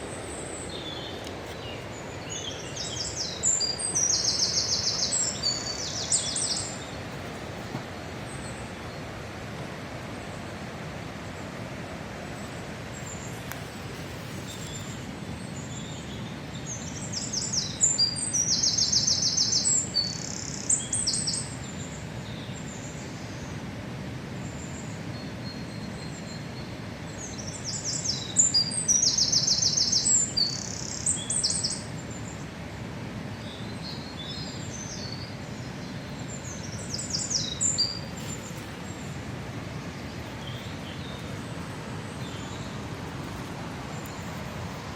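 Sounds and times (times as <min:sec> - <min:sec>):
low rushing background noise: 0:00.0 - 0:44.9
songbird trilling: 0:36.3 - 0:39.0.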